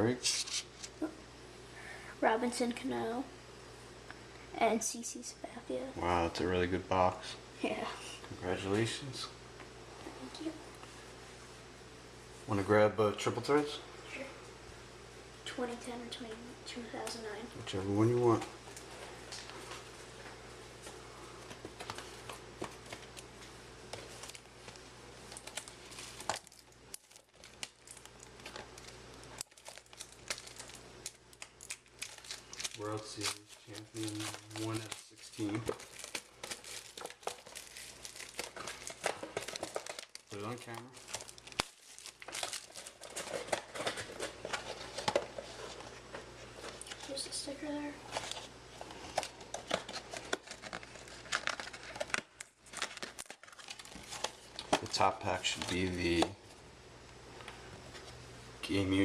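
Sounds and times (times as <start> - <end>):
plastic wrapper crinkling and tearing: 21.7 - 45.9, 48.0 - 56.2
wrapper snapping: 23.9 - 44.2, 49.2 - 55.0.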